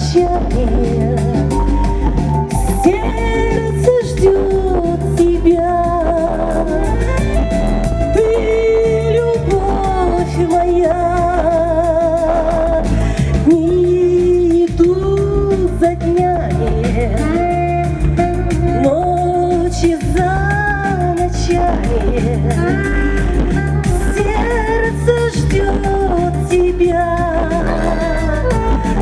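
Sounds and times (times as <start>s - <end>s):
song over sound system: 0.0s - 29.0s
wavering wordless melody: 23.9s - 29.0s.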